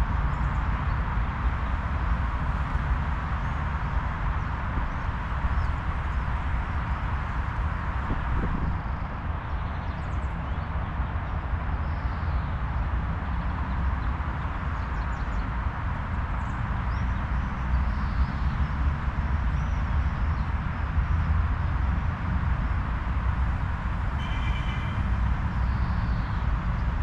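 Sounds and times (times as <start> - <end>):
faint bird chirps: 24.2 - 25.0.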